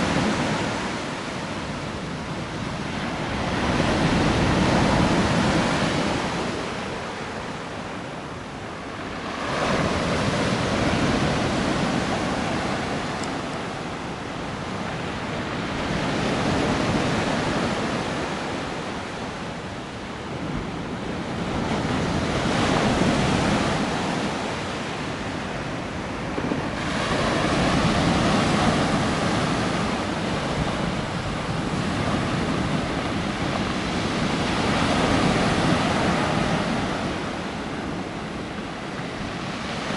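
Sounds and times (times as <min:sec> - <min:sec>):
waves breaking on shore: 0:00.0 - 0:39.9.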